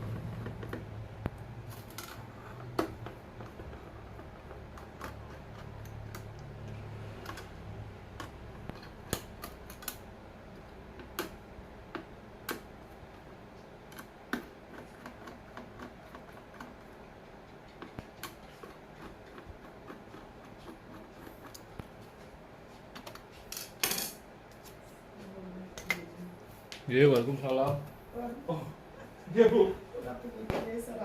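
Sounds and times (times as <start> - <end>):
hardware clicks and taps: 0.1 - 12.8.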